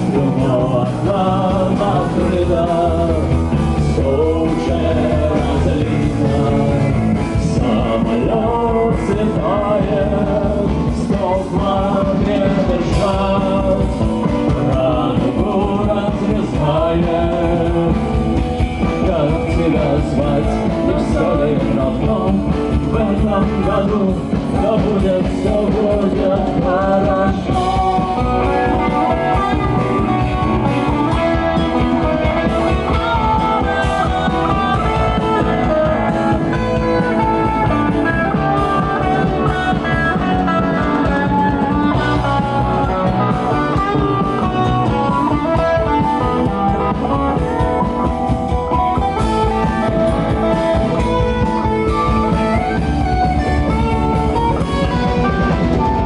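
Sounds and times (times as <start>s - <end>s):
rock guitar: 0.0s - 56.0s
steady drum beat: 0.0s - 56.0s.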